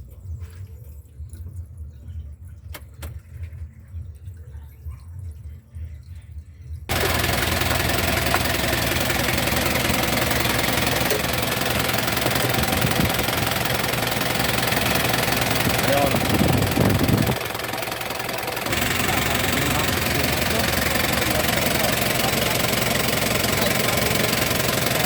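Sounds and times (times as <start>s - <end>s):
diesel engine running loudly: 6.9s - 25.0s.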